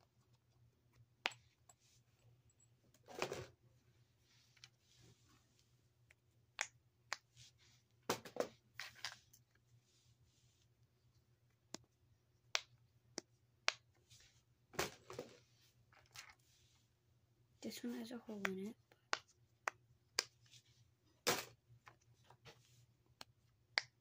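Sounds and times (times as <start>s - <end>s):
fidget toys clicking and tapping: 23.1s - 24.0s.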